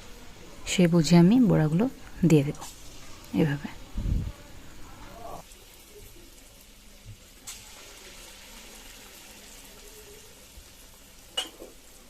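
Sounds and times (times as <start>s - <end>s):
fritters sizzling in hot oil: 1.7s - 3.9s, 4.7s - 12.0s.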